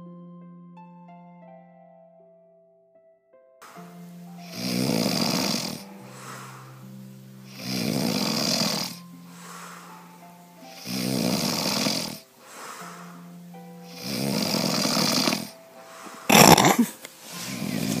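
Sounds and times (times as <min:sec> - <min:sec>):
background music with held notes: 0:00.0 - 0:18.0
loud rasping snores: 0:04.4 - 0:06.8, 0:07.5 - 0:09.9, 0:10.6 - 0:13.2, 0:13.9 - 0:18.0.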